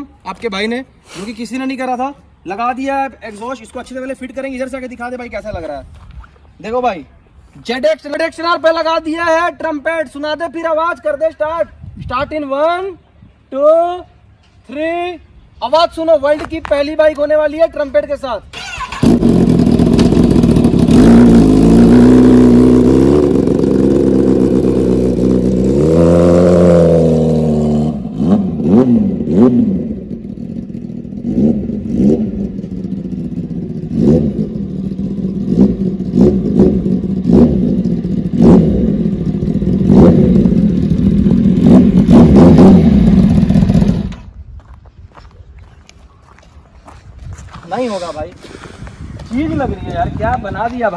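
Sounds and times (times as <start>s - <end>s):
motorcycle engine revving: 18.6s - 44.3s.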